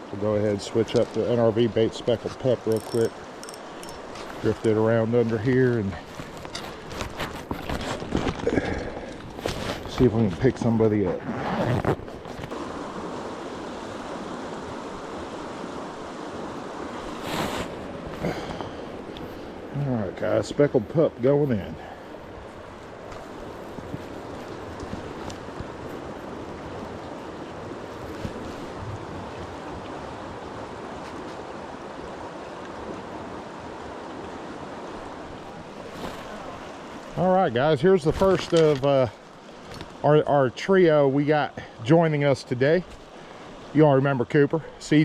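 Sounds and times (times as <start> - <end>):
creek water rushing: 0.0 - 45.0.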